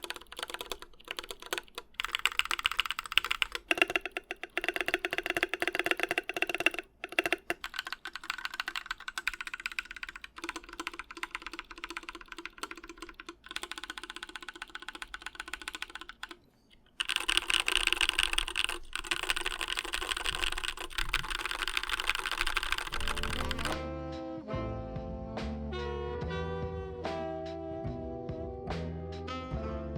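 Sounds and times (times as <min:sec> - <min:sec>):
mechanical keyboard typing: 0:00.0 - 0:23.8.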